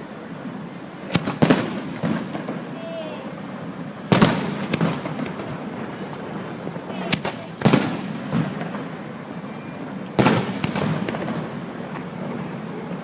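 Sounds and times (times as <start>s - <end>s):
fireworks booming: 0.0s - 13.0s
fireworks popping and crackling: 0.0s - 13.0s.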